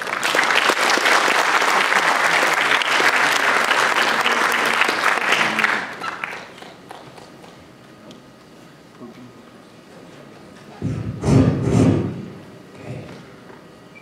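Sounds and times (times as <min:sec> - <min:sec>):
audience applauding: 0:00.0 - 0:07.6.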